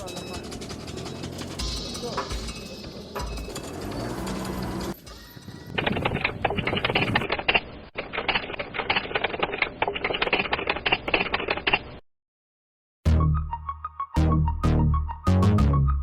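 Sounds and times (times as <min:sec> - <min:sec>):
typewriter keys clacking: 0:05.8 - 0:11.8.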